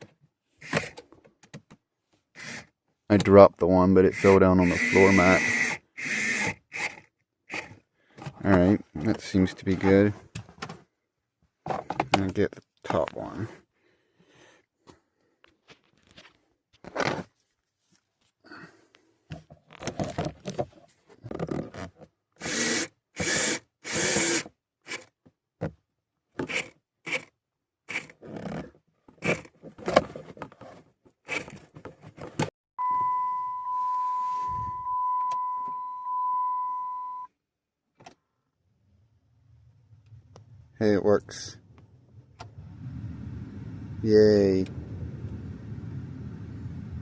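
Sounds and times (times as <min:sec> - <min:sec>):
screws being driven: 0:02.4 - 0:02.7, 0:04.1 - 0:07.8, 0:22.4 - 0:25.1, 0:26.4 - 0:27.3, 0:27.9 - 0:28.6, 0:29.2 - 0:29.5
electronic warning tone: 0:32.8 - 0:37.3.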